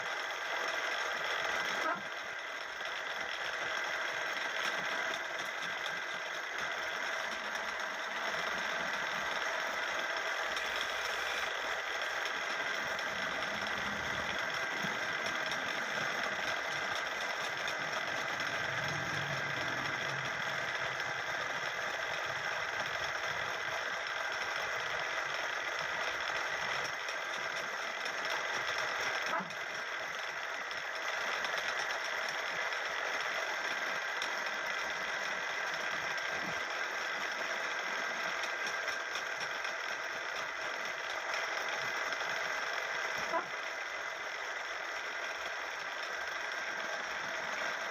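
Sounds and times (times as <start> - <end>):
wood lathe running: 0.0 - 47.9.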